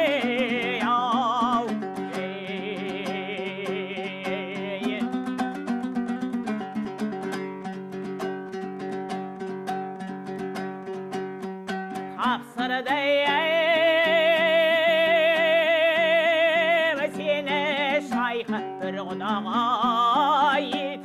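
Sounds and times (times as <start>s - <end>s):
person singing with vibrato: 0.0s - 6.0s, 12.1s - 21.0s
strummed lute: 0.0s - 21.0s.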